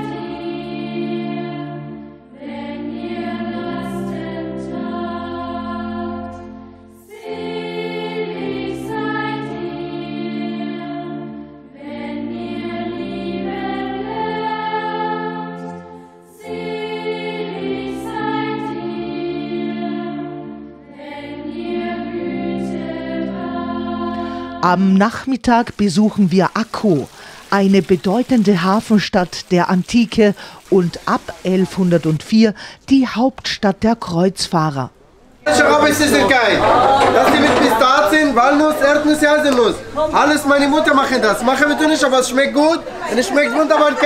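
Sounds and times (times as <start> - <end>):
slow choral music: 0.0 - 25.0, 35.4 - 44.0.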